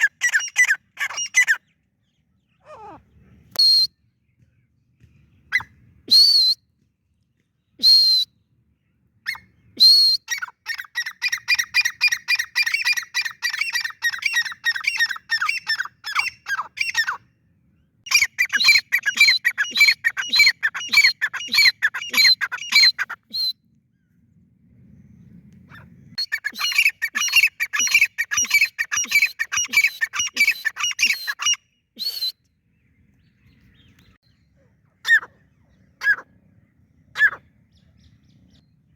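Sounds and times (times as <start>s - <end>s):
francolins calling: 18.1s - 23.2s, 26.2s - 32.2s.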